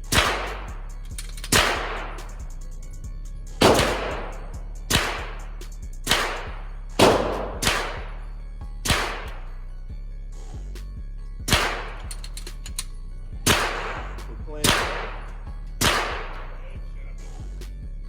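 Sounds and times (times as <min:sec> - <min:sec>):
pistol shots with echo: 0:00.1 - 0:00.8, 0:01.5 - 0:02.2, 0:03.6 - 0:05.4, 0:06.1 - 0:08.2, 0:08.9 - 0:09.4, 0:11.5 - 0:12.1, 0:13.5 - 0:16.5.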